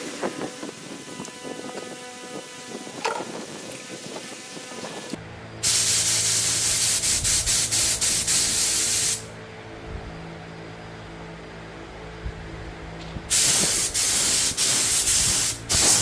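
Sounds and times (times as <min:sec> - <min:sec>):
steady low hum: 0:00.0 - 0:16.0
pressurised spray hissing: 0:05.6 - 0:09.3, 0:13.3 - 0:16.0.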